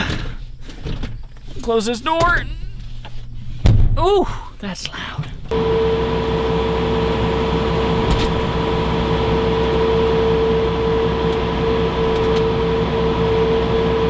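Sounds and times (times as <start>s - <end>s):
constant whine: 4.8s - 14.0s
low machine rumble: 5.3s - 14.0s
tractor cab drone: 5.5s - 14.0s.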